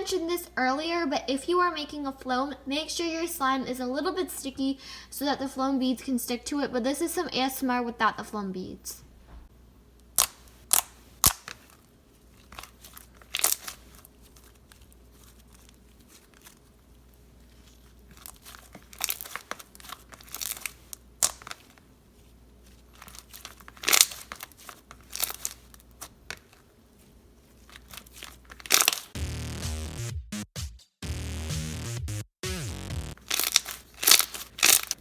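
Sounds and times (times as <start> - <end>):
slime squishing and popping: 10.2 - 11.8, 12.5 - 16.7, 17.6 - 21.8, 23.0 - 26.5, 27.7 - 29.2, 33.2 - 35.0
music: 29.2 - 33.2.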